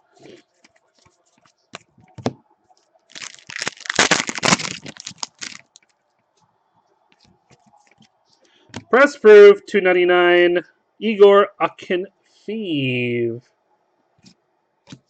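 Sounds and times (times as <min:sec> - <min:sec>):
foil wrapper tearing and crinkling: 0:03.1 - 0:05.8.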